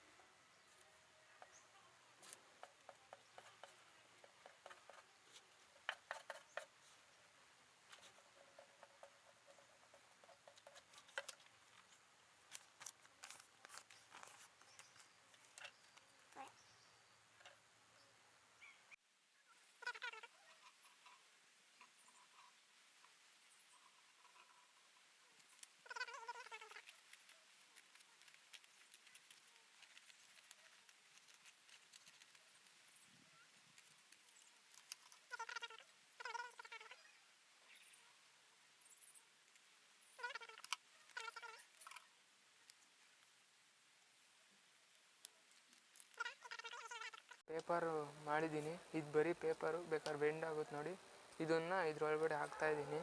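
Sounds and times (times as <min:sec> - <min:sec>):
high-pitched animal-like call: 0:19.8 - 0:21.2, 0:25.8 - 0:26.9, 0:35.3 - 0:37.2, 0:40.2 - 0:42.0, 0:46.2 - 0:47.4.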